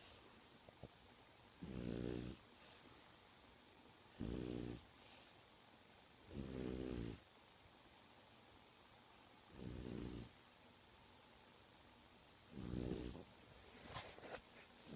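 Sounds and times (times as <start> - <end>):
dog snoring: 1.6 - 2.4, 4.1 - 4.9, 6.2 - 7.2, 9.5 - 10.4, 12.5 - 13.3.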